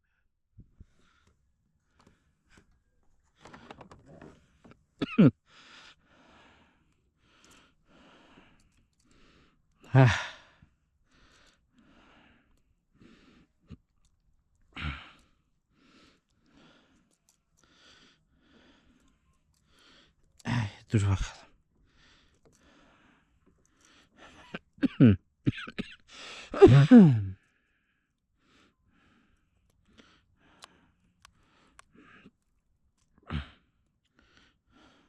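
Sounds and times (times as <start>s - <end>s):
man laboured breathing: 0.7s - 2.7s, 3.3s - 24.8s, 25.5s - 32.5s, 33.1s - 35.0s
man voiced outbursts: 26.6s - 27.3s.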